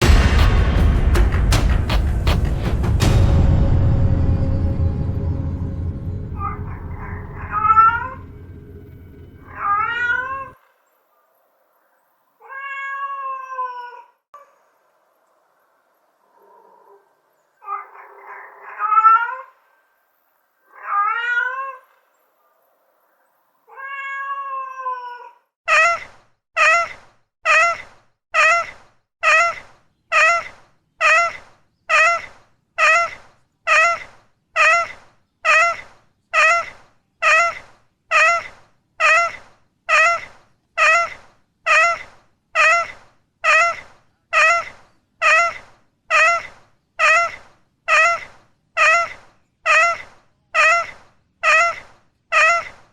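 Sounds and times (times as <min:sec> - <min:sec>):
cat meowing: 0:09.4 - 0:10.6, 0:12.4 - 0:14.1, 0:17.6 - 0:19.5, 0:20.7 - 0:21.8, 0:23.7 - 0:26.0.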